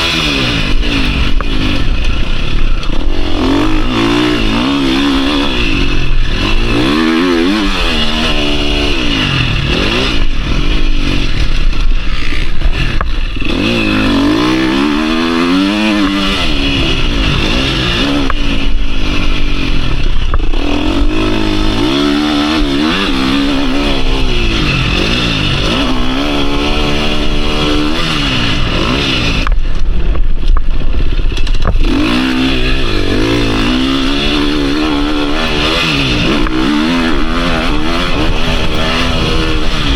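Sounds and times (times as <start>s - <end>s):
motocross engine revving: 0.0s - 39.9s.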